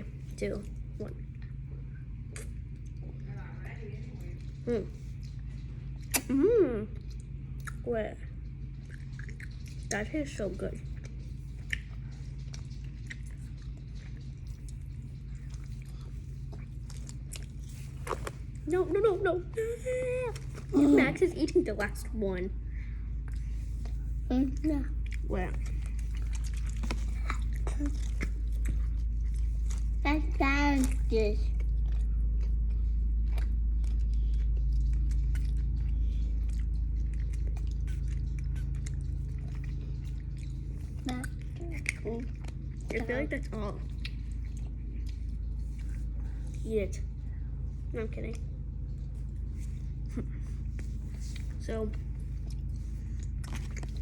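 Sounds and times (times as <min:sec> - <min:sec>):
steady low hum: 0:00.0 - 0:54.0
wet mouth clicks: 0:02.3 - 0:03.0, 0:06.0 - 0:07.8
mouth clicks and smacks chewing: 0:04.3 - 0:07.8, 0:08.4 - 0:10.1, 0:10.8 - 0:18.7, 0:23.2 - 0:30.0, 0:30.8 - 0:46.6, 0:48.3 - 0:54.0.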